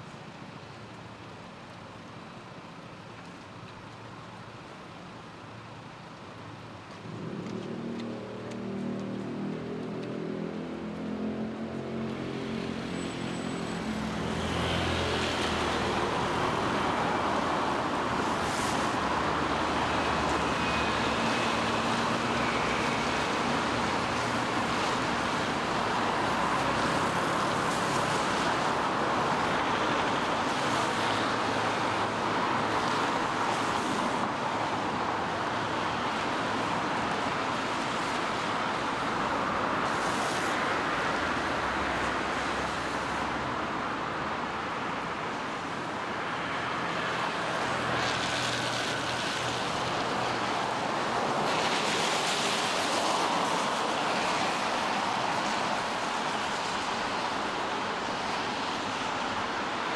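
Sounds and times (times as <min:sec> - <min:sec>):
tyres hissing on wet asphalt: 0:11.0 - 0:59.9.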